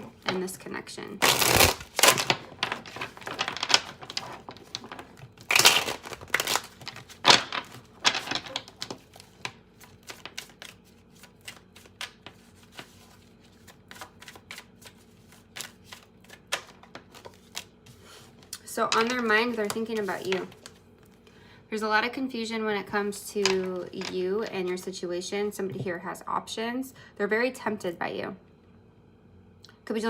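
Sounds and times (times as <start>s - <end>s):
cards being shuffled: 1.2s - 21.3s, 23.4s - 24.8s.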